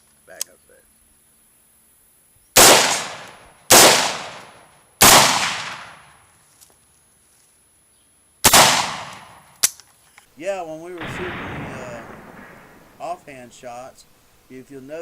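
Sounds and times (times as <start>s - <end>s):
rifle shots with echo: 2.6s - 6.2s, 8.4s - 9.6s, 10.8s - 13.9s.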